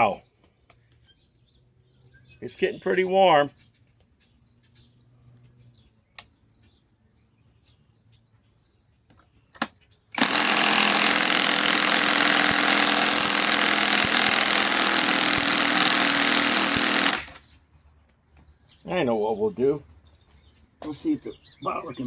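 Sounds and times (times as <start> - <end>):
impact wrench hammering: 10.2 - 17.4.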